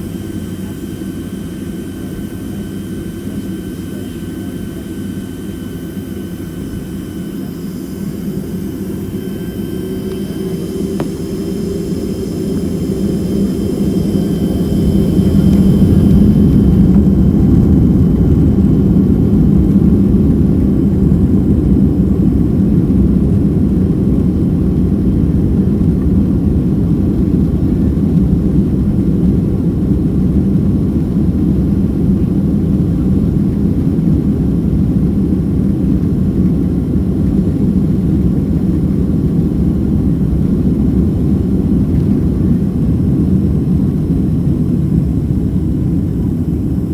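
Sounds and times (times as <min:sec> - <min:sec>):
thin high whine: 0:00.0 - 0:22.9, 0:39.8 - 0:46.9
jet engine cabin rumble: 0:00.0 - 0:46.9.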